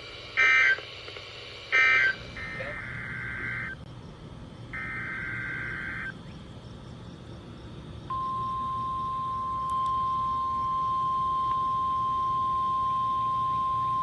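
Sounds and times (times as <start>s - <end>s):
steady warning alarm tone: 0.0s - 0.9s, 1.6s - 3.9s, 4.7s - 6.2s, 8.1s - 14.0s
buzzy screeching data bursts: 1.7s - 3.8s, 4.7s - 6.1s.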